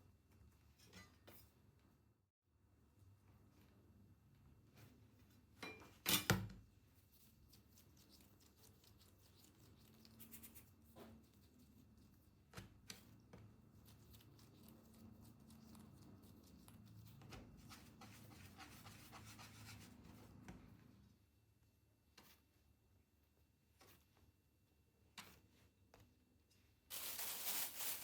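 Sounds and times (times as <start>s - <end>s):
soft rubbing and scraping: 13.6s - 20.8s.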